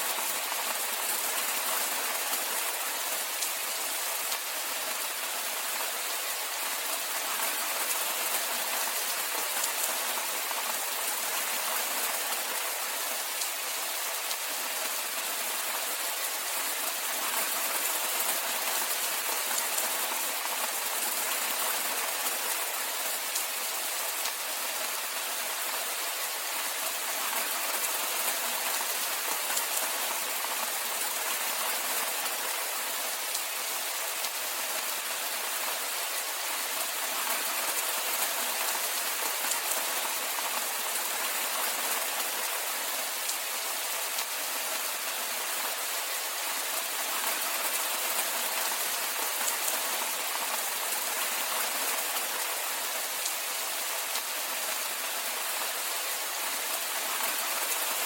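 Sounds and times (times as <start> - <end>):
steady rainfall: 0.0 - 58.0.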